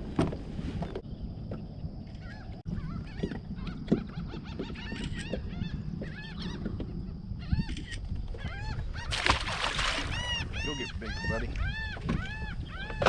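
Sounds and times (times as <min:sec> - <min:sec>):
wind: 0:00.0 - 0:13.0
water noise: 0:09.0 - 0:12.3
flock of birds calling: 0:09.9 - 0:13.0.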